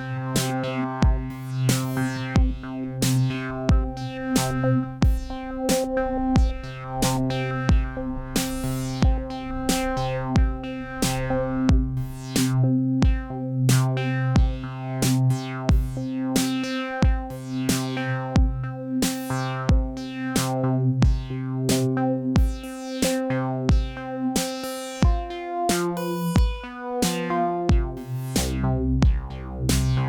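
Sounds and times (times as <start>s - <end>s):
kick drum: 1.0s - 1.4s, 2.4s - 2.7s, 3.7s - 4.1s, 5.0s - 5.3s, 6.4s - 6.7s, 7.7s - 8.0s, 9.0s - 9.4s, 10.4s - 10.7s, 11.7s - 12.2s, 13.0s - 13.4s, 14.4s - 14.7s, 15.7s - 16.1s, 17.0s - 17.4s, 18.4s - 18.7s, 19.7s - 20.0s, 21.0s - 21.3s, 22.4s - 22.7s, 23.7s - 24.0s, 25.0s - 25.4s, 26.4s - 26.7s, 27.7s - 28.1s, 29.0s - 30.0s
synth sustained chords: 1.5s - 13.0s
hi-hat and clap hits: 29.7s - 30.0s.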